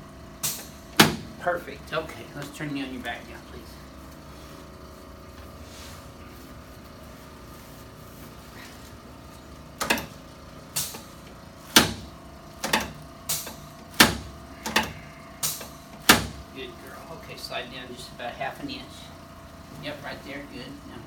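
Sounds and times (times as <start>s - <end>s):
low room hum: 0.0s - 21.0s.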